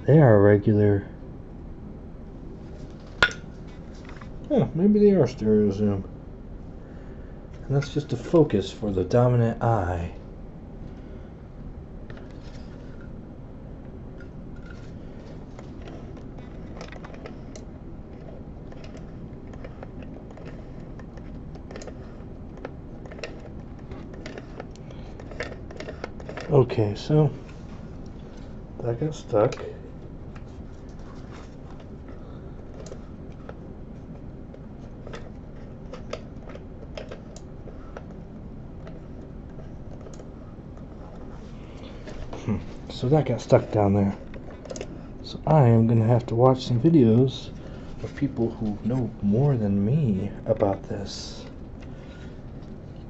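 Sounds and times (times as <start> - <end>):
low background noise: 0.0 - 53.0
steady low hum: 0.0 - 53.0
small microscope parts clicking: 15.6 - 26.5
clicks of microscope parts: 44.2 - 45.0.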